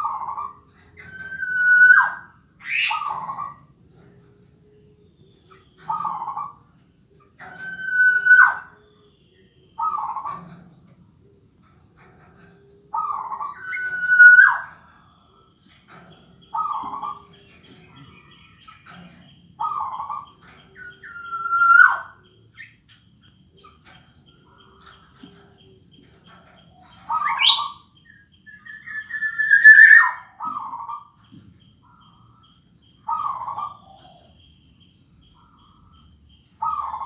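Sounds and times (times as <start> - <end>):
bird giving nasal whining calls: 13.0 - 14.7, 20.8 - 22.1, 27.1 - 27.8, 28.5 - 30.2.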